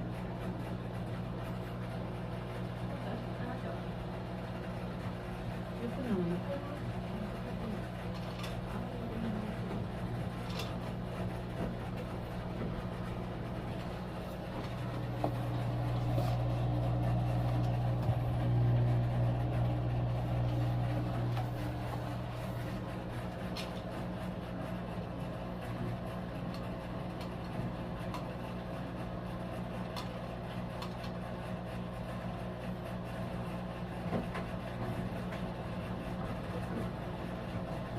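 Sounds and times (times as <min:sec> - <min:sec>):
washing machine humming: 0:00.0 - 0:37.9.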